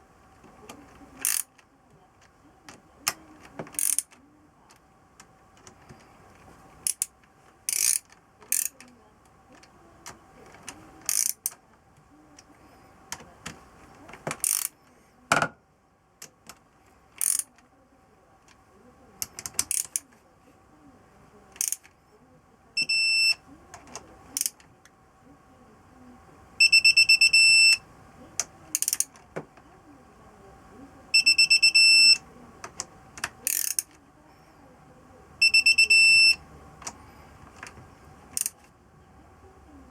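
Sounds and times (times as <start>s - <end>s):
metallic clicks of hand tools: 17.2s - 17.5s.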